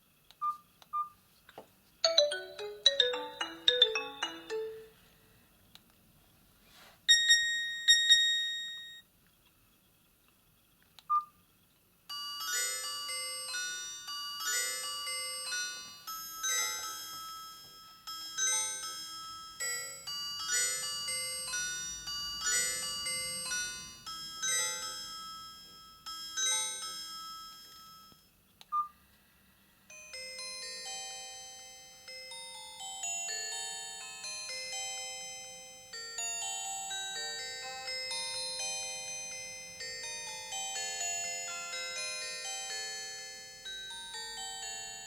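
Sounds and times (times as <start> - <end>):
bell-like ringtone melody: 2.0 - 5.1, 12.4 - 28.1.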